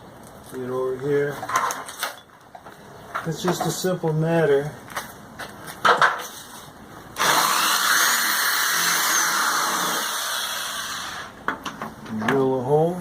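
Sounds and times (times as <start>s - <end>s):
electric drill drilling metal: 7.2s - 11.3s.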